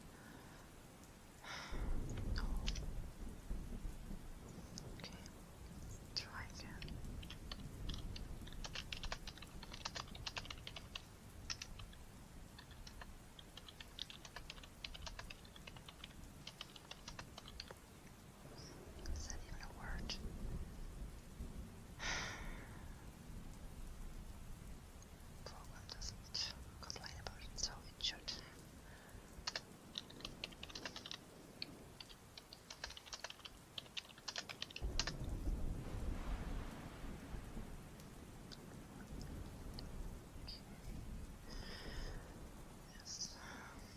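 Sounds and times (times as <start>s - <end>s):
rain: 0.0s - 43.9s
thunder rumble: 0.0s - 43.9s
typing on computer keyboard: 6.8s - 12.0s, 12.6s - 17.8s, 29.4s - 31.2s, 32.0s - 35.1s.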